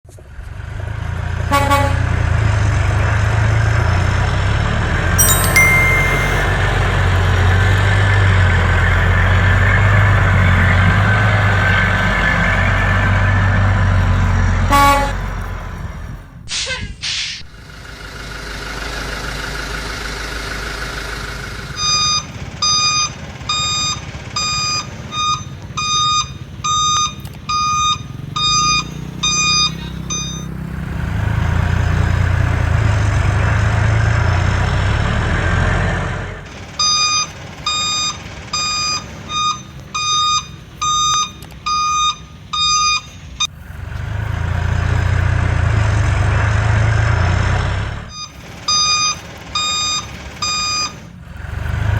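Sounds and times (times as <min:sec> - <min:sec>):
toy warning beep: 0:05.2 - 0:06.6, 0:21.8 - 0:30.5, 0:36.8 - 0:43.5, 0:48.1 - 0:51.0.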